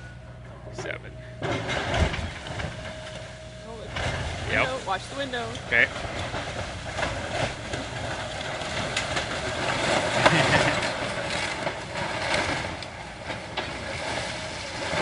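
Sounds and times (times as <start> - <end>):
excavator engine running: 0.0 - 15.0
building material crunching: 5.6 - 15.0.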